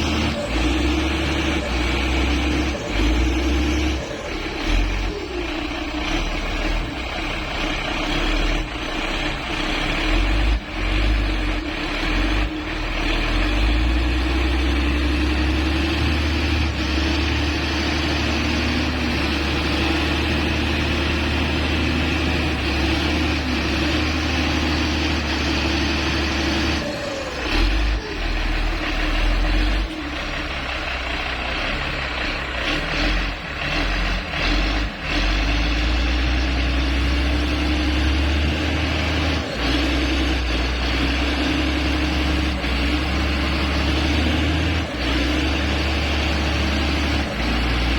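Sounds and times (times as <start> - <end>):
grader diesel engine droning: 0.0 - 47.9.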